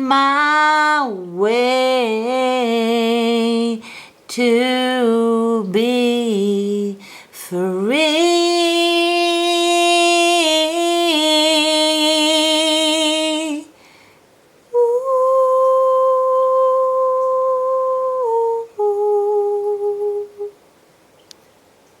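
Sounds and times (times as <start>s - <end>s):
woman singing a long note: 0.0s - 13.7s, 14.7s - 20.6s
woman humming: 14.7s - 20.6s.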